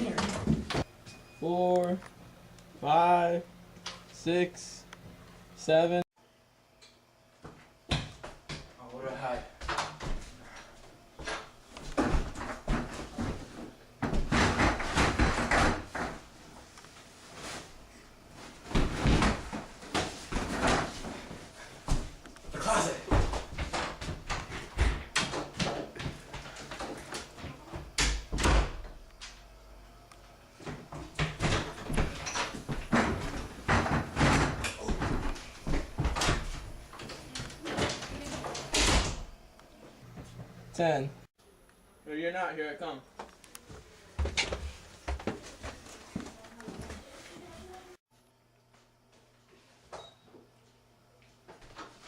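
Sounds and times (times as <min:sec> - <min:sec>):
doors opening and shutting: 0:23.1 - 0:29.4, 0:31.1 - 0:39.4.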